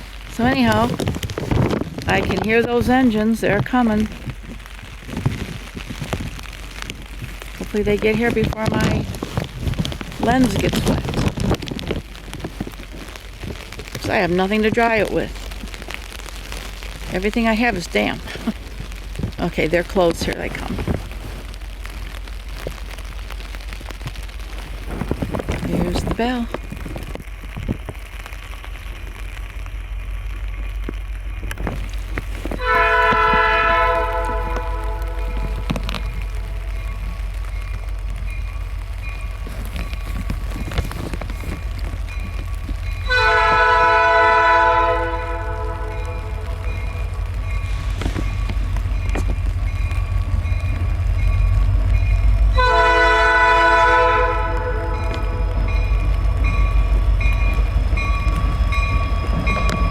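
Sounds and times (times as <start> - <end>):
locomotive engine rumble: 0.0 - 59.9
train air horn: 32.6 - 35.8, 43.1 - 46.7, 52.6 - 55.5
crossing bell dinging: 45.2 - 59.9.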